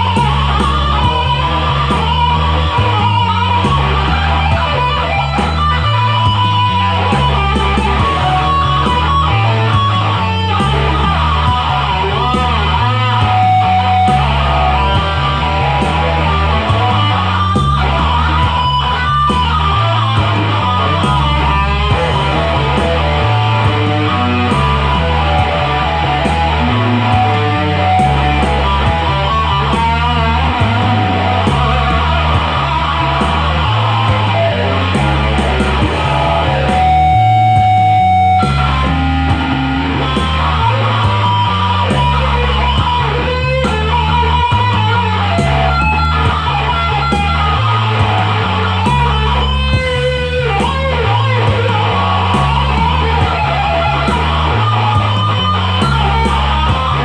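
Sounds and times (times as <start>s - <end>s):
electric guitar lead with bent notes: 0.0s - 57.0s
repeating bass line: 0.0s - 57.0s.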